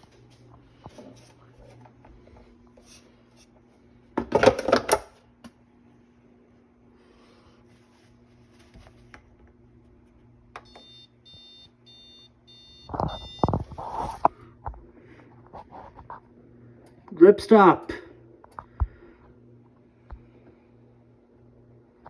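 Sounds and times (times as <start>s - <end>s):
short electronic beeps: 10.7s - 13.5s.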